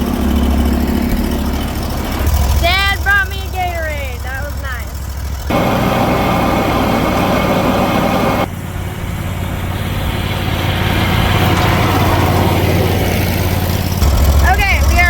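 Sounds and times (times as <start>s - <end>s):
lawn mower engine running: 0.0s - 15.0s
loud rushing noise: 5.5s - 14.1s.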